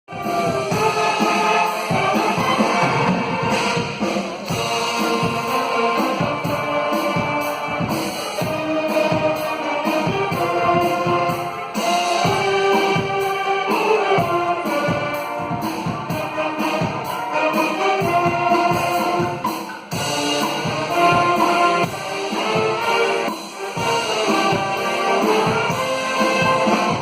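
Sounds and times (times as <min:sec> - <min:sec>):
percussion strokes: 0:00.1 - 0:27.0
sustained melody: 0:00.1 - 0:27.0.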